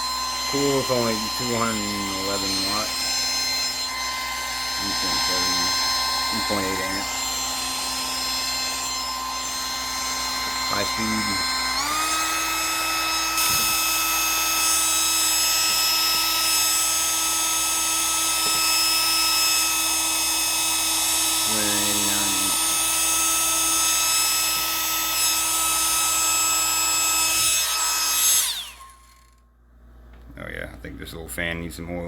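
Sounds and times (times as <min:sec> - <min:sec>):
hair dryer running: 0:00.0 - 0:29.4.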